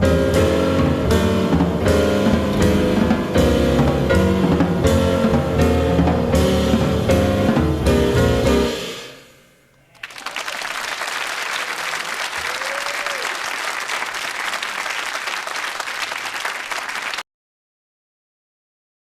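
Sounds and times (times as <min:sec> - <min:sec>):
piano trio chord: 0:00.0 - 0:10.0
audience applause: 0:09.8 - 0:17.2.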